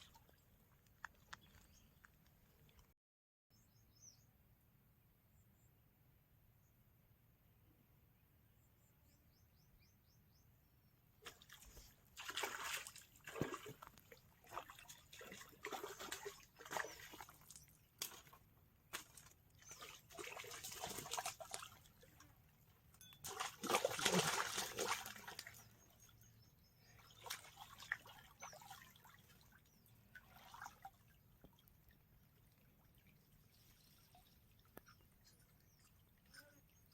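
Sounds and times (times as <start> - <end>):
water sloshing and splashing: 11.2 - 26.2, 27.0 - 36.3
faint bird chirps: 33.0 - 36.9.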